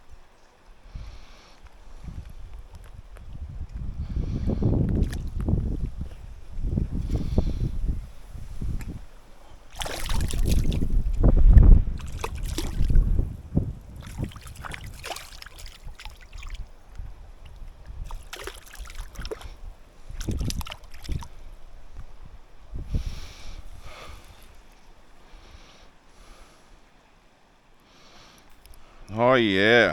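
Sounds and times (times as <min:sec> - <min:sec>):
water splashing and sloshing: 0:04.8 - 0:22.8.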